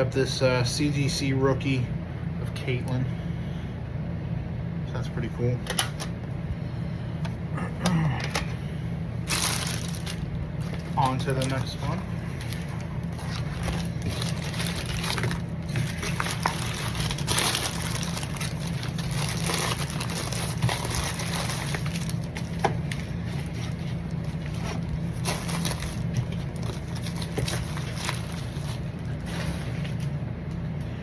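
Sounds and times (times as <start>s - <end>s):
steady low hum: 0.0s - 31.0s
packaging rustling and crinkling: 9.2s - 30.3s.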